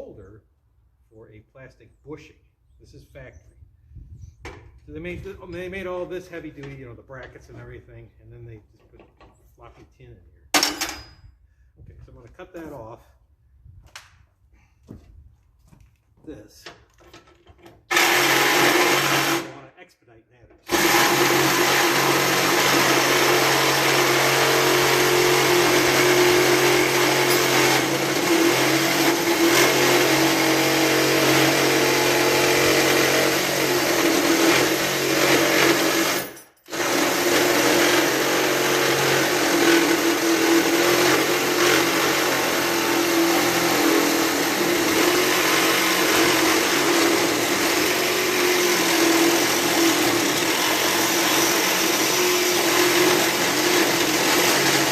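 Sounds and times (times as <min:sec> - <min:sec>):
power tool cutting metal: 0:17.9 - 0:19.6, 0:20.7 - 0:54.9.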